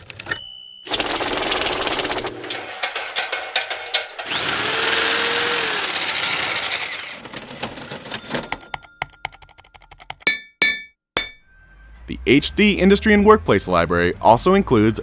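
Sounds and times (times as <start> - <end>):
rapid mechanical clicking: 0.9 - 3.0.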